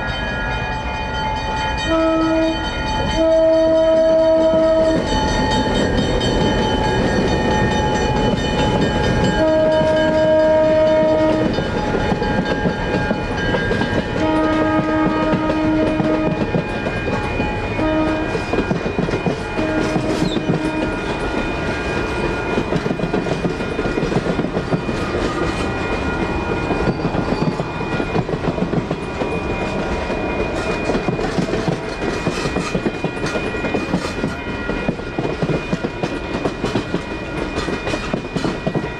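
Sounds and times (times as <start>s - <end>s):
crossing warning bell ringing: 0.0s - 38.9s
train rumbling past: 0.0s - 38.9s
diesel locomotive horn: 1.8s - 5.1s, 9.2s - 11.6s, 14.1s - 22.4s
wheels clacking over rails: 18.3s - 38.9s.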